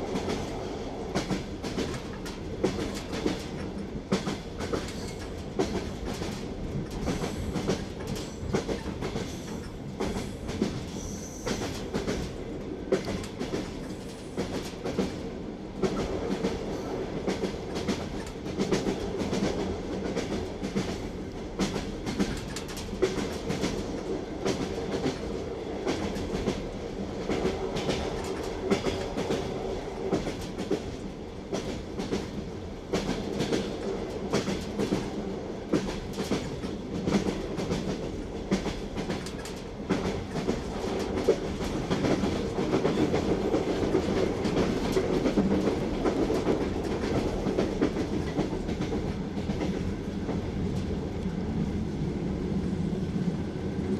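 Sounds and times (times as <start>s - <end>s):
train wheels clattering over rail joints: 1.2s - 15.2s, 21.6s - 25.3s, 35.7s - 49.9s.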